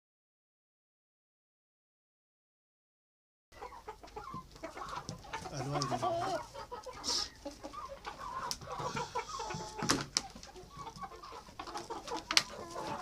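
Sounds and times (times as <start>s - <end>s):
chickens clucking: 3.5s - 13.0s.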